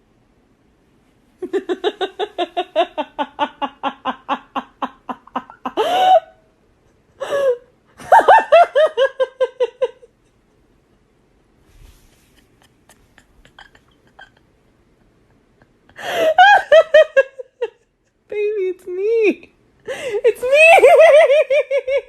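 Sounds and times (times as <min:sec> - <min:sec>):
person laughing hard: 0:01.4 - 0:06.4, 0:12.3 - 0:17.8.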